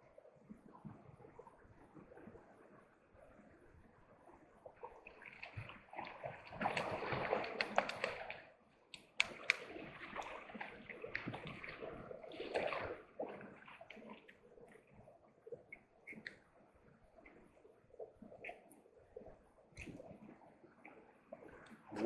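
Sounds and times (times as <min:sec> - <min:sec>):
water splashing and sloshing: 0:00.0 - 0:22.0.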